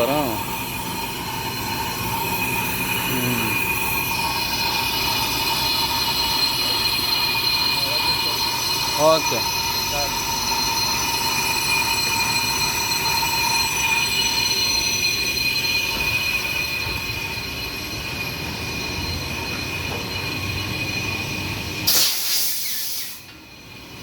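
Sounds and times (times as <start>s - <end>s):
brake lathe metallic squeal: 0.0s - 24.0s
short loud hiss: 21.9s - 23.3s.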